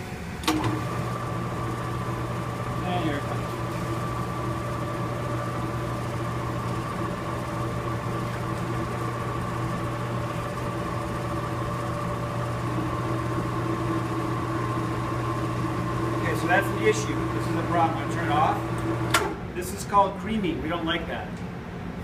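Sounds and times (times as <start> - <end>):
electric meat grinder humming: 0.6 - 19.2.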